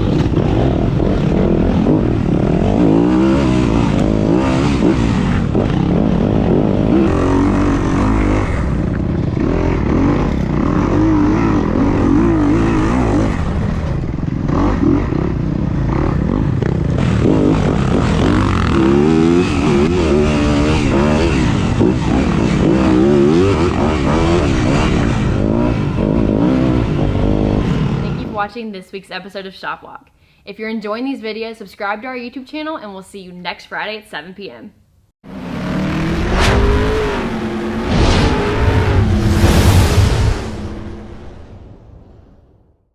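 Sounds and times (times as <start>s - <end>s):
motorcycle engines revving: 0.0s - 28.5s, 35.2s - 39.5s.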